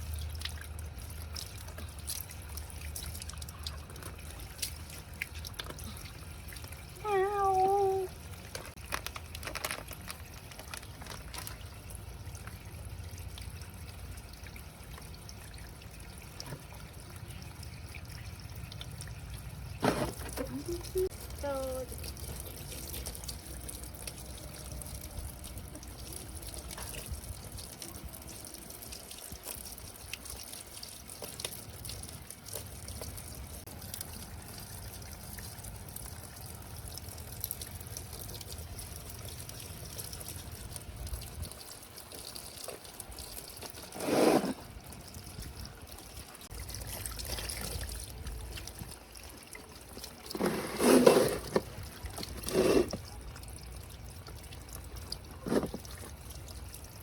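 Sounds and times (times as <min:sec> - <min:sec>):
water trickling: 0:00.0 - 0:57.0.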